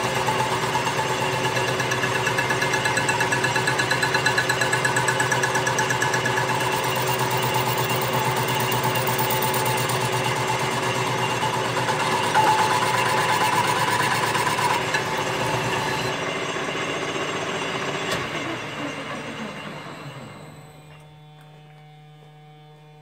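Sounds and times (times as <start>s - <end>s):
machine rhythmic chatter: 0.0s - 18.1s.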